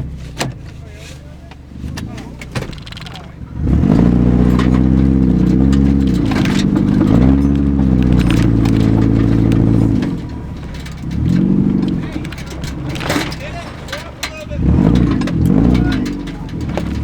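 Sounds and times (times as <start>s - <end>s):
off-road vehicle engine revving: 0.0s - 17.0s.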